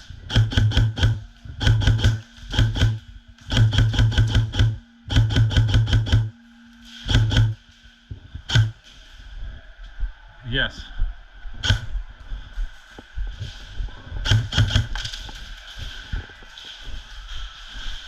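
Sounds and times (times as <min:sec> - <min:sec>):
airsoft gun firing bursts: 0:00.3 - 0:06.3, 0:07.1 - 0:07.6, 0:11.6 - 0:11.9, 0:14.2 - 0:15.2.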